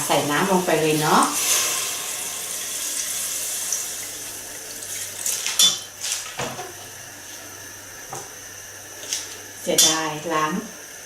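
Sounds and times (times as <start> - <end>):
water pouring into pot: 0.6 - 5.6.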